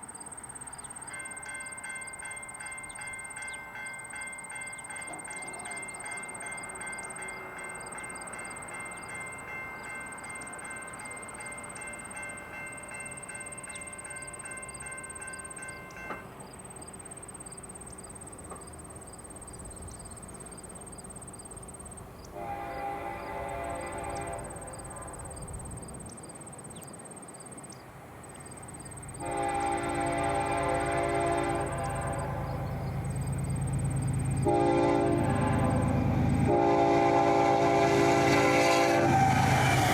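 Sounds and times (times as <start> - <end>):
faint repeated ringing: 0.1 - 19.5
train horn blasts: 22.2 - 25.8, 29.2 - 39.9
diesel locomotive rumble: 27.5 - 39.9.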